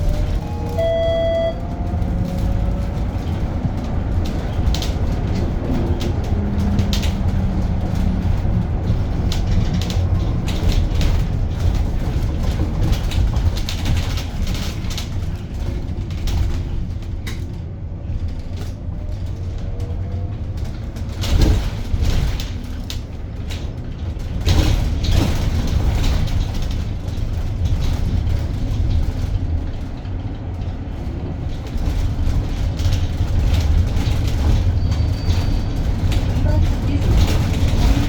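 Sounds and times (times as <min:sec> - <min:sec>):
road and tyre rumble: 0:00.0 - 0:38.0
short electronic beep: 0:00.4 - 0:01.6
rattles and knocks: 0:01.6 - 0:38.0.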